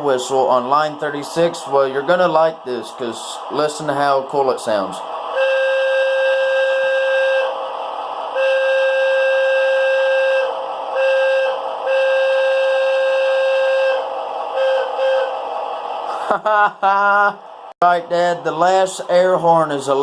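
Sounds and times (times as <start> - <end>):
train air whistle hooting: 5.2 - 16.2.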